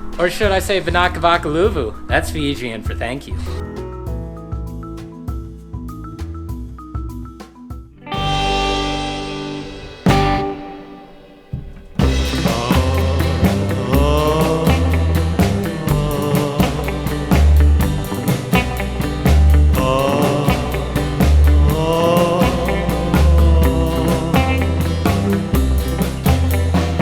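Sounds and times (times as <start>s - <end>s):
rock band with drums and bass: 0.0s - 27.0s
held chord: 8.1s - 13.2s.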